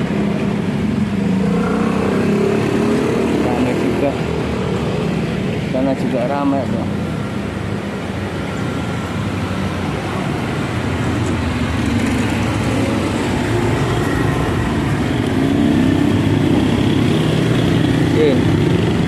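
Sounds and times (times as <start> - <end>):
road traffic passing: 0.0 - 19.0.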